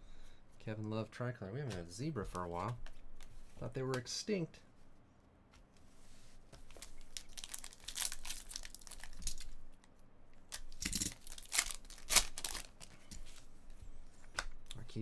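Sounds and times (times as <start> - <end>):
wrapper tearing and crinkling: 6.7 - 9.6, 10.5 - 12.9.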